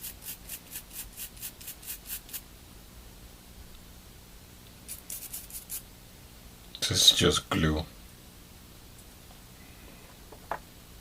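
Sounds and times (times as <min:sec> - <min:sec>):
toothbrush scrubbing circuit board: 0:00.0 - 0:02.4, 0:04.9 - 0:05.8.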